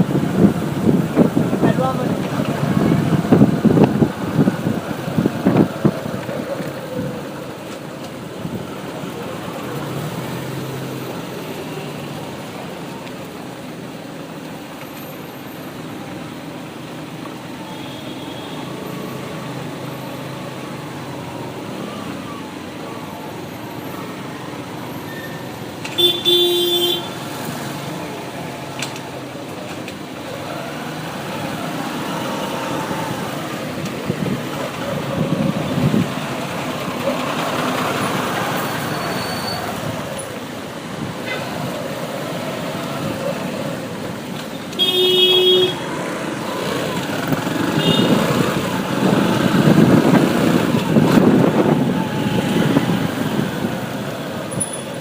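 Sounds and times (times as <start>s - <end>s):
road traffic noise: 0.0s - 55.0s
vehicles passing: 0.0s - 55.0s
vehicle horn honking: 26.0s - 27.2s, 44.8s - 45.9s, 47.8s - 48.4s.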